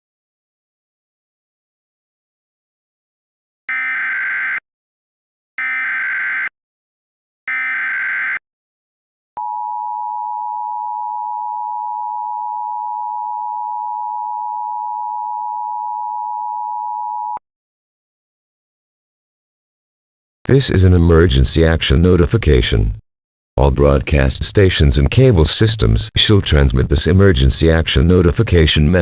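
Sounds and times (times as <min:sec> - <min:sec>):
buzzy digital data tones: 0:03.7 - 0:04.6, 0:05.6 - 0:06.5, 0:07.5 - 0:08.4.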